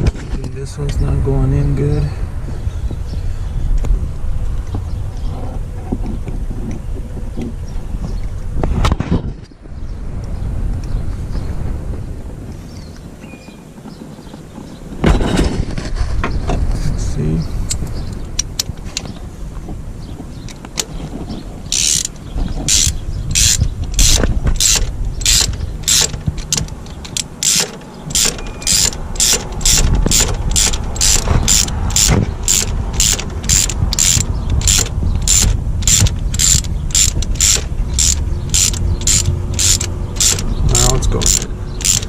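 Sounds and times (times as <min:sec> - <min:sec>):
hand ratchet clicking: 0:21.7 - 0:42.0.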